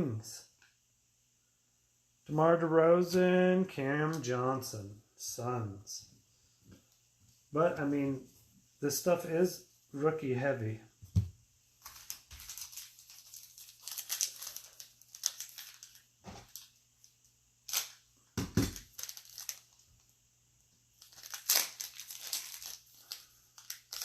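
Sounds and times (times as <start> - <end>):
card wrappers tearing and crinkling: 11.8 - 20.1, 20.9 - 24.0.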